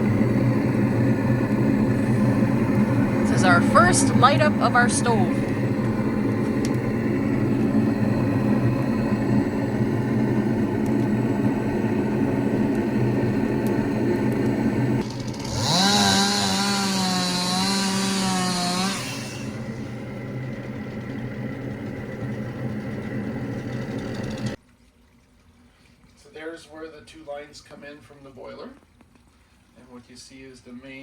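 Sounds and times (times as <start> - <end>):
machine hum: 0.0 - 24.6
small motor whining: 12.6 - 24.6.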